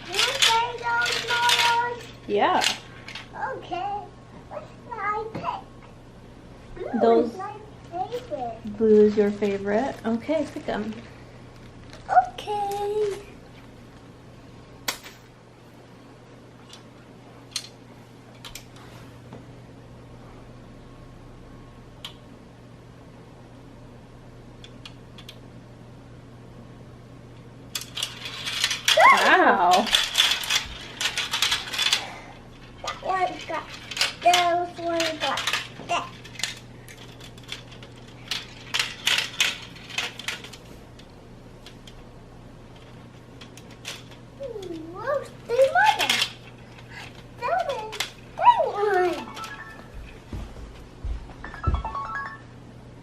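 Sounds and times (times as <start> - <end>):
faint steady hum: 0.0 - 53.0
marbles clicking down plastic track: 0.1 - 2.0, 47.6 - 49.8.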